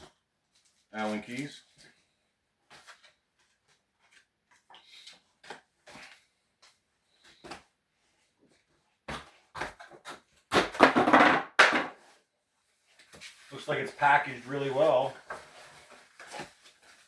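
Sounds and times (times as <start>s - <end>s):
packaging rustling: 12.9s - 17.0s.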